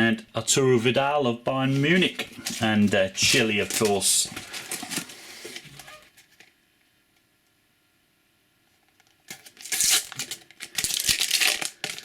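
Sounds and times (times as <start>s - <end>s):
foil packet crinkling and tearing: 2.4s - 6.5s, 8.9s - 12.0s.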